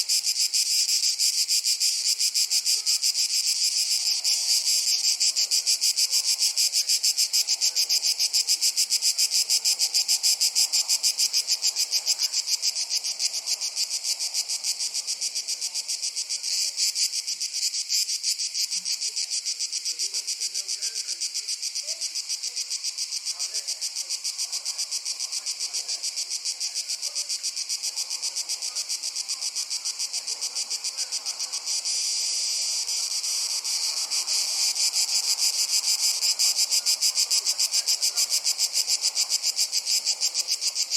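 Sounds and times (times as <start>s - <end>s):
crickets chirring: 0.0s - 40.9s.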